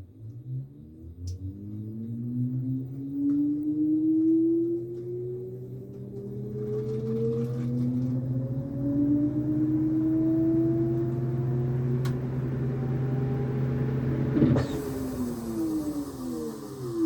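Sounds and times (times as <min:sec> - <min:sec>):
washing machine drum whine: 0:03.1 - 0:17.0
washing machine motor hum: 0:05.8 - 0:17.0.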